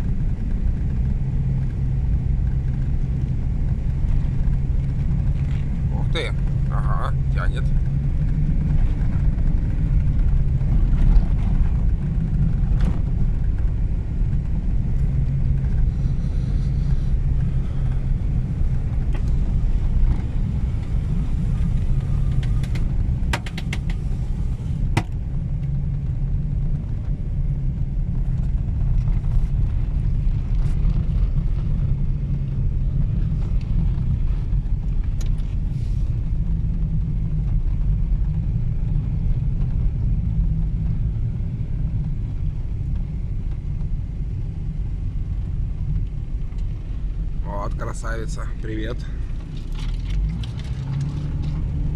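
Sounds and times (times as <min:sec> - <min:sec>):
engine and tyres rumbling: 0:00.0 - 0:51.9
sharp clicks and ticks: 0:21.7 - 0:24.0.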